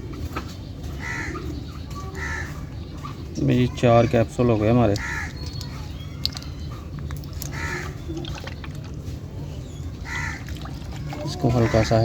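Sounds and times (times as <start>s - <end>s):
bird calling: 0.9s - 8.8s, 9.5s - 12.0s.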